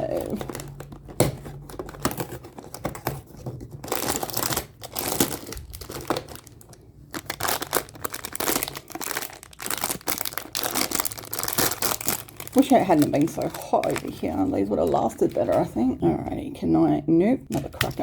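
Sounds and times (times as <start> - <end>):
packaging crinkling and tearing: 0.0 - 15.8.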